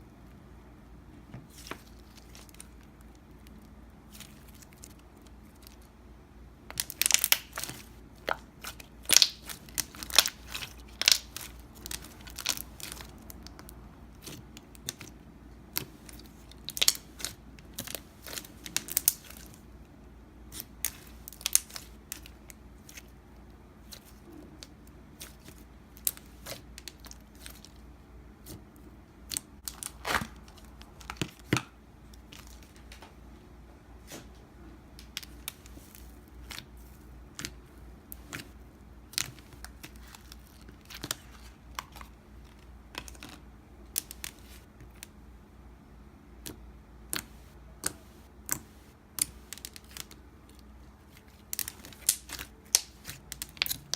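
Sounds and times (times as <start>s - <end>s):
slime squished by hand: 6.7s - 19.6s, 46.4s - 53.9s.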